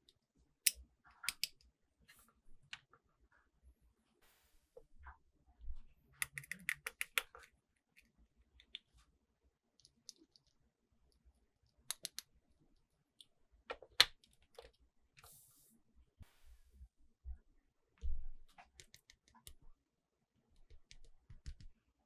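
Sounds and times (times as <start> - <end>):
plastic toy pieces clicking: 1.3 - 1.5, 6.2 - 7.4.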